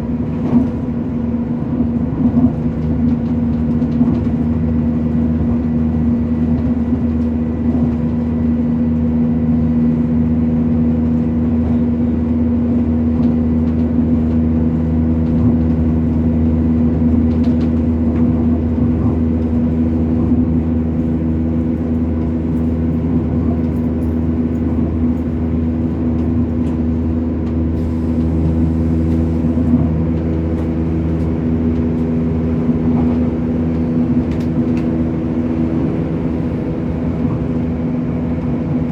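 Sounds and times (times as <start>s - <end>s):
train diesel engine running: 0.0s - 38.9s
wheels rumbling on track: 0.0s - 38.9s.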